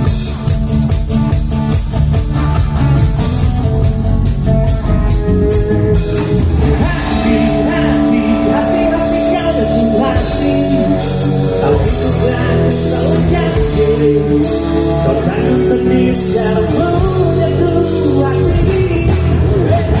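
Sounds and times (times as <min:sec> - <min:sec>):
rock band playing: 0:00.0 - 0:20.0
cymbal crashes: 0:06.8 - 0:12.3
person singing: 0:06.8 - 0:20.0.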